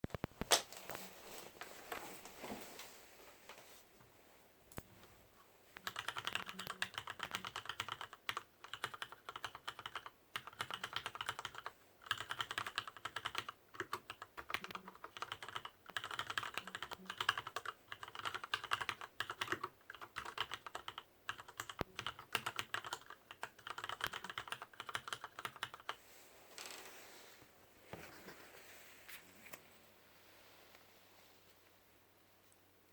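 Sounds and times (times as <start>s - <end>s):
mechanical keyboard typing: 5.8s - 26.0s.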